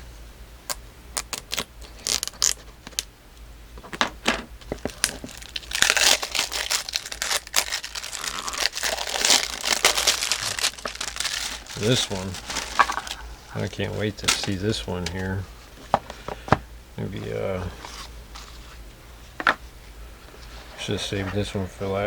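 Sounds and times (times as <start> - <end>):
wrapping crinkling and tearing: 1.2 - 3.1, 4.6 - 15.5.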